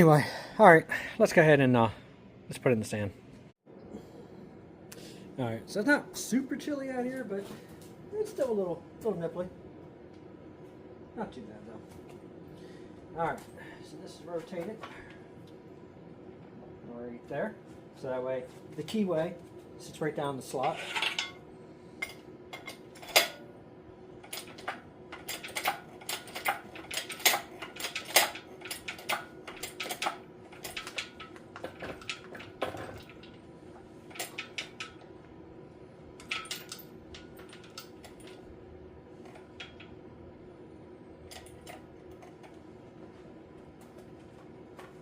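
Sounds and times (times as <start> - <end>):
faint steady hum: 0.0 - 45.0
metal parts clinking and knocking: 20.6 - 21.4, 22.0 - 23.4, 24.2 - 35.2, 36.2 - 38.5, 39.2 - 40.0, 41.2 - 42.6.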